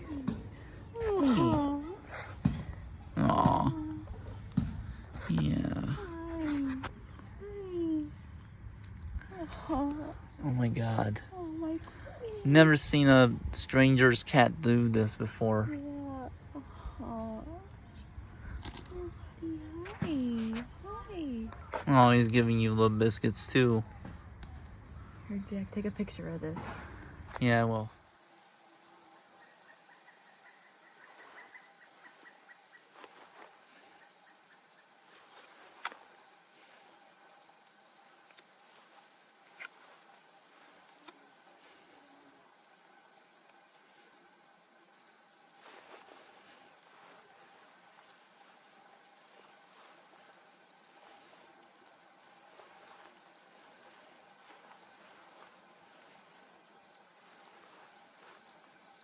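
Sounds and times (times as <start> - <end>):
insects chirring: 0.0 - 59.0.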